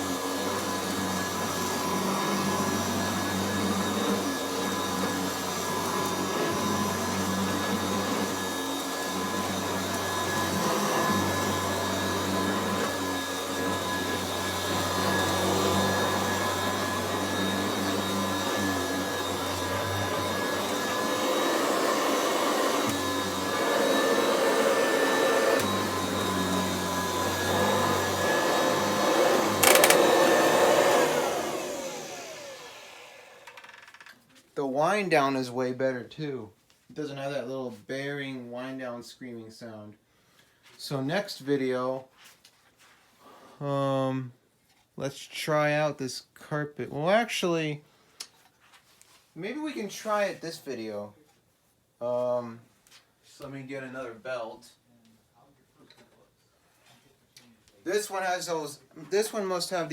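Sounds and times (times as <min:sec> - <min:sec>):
vacuum motor running: 0:00.0 - 0:33.7.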